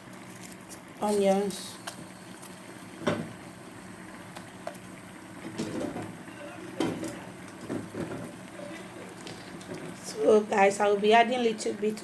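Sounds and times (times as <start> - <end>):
kitchen clatter and rustling: 5.4 - 6.1, 6.8 - 8.4.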